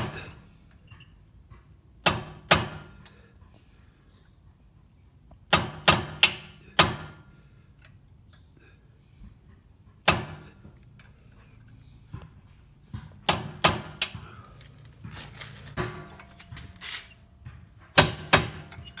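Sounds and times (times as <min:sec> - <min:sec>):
hammer tapping steel punch: 0:02.0 - 0:03.2, 0:05.5 - 0:07.3, 0:10.0 - 0:11.2, 0:12.1 - 0:19.0.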